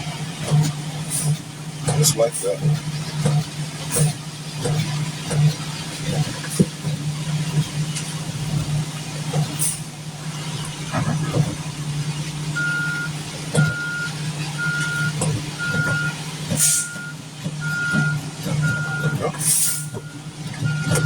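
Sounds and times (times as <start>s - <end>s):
truck engine running: 0.0s - 21.0s
reversing alarm beeping: 12.6s - 21.0s.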